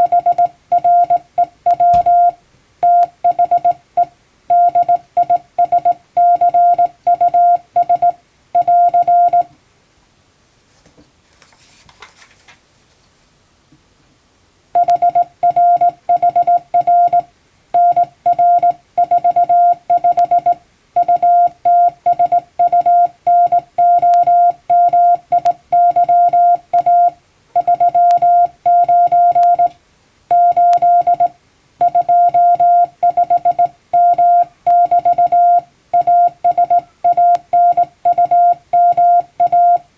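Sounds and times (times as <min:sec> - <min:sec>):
morse code tone keying: 0:00.0 - 0:03.8, 0:04.5 - 0:09.5, 0:14.8 - 0:29.7, 0:30.3 - 0:39.9.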